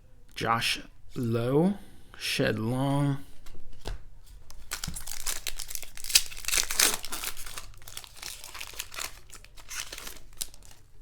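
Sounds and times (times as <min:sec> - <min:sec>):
plastic wrapper crinkling and tearing: 0:04.5 - 0:11.0.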